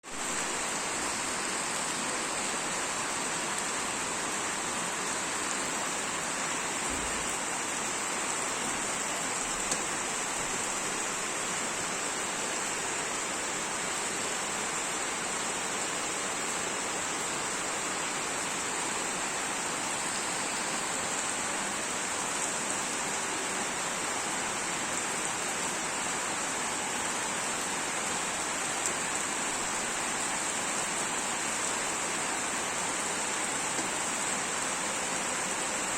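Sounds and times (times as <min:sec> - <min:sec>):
rain falling on street: 0:00.0 - 0:35.9.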